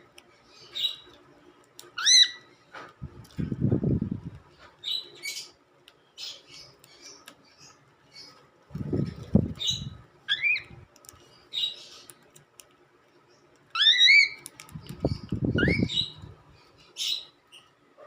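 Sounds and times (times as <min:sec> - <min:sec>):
cockatiel calling: 0:02.0 - 0:02.5, 0:09.6 - 0:10.7, 0:13.7 - 0:14.5, 0:15.5 - 0:16.2.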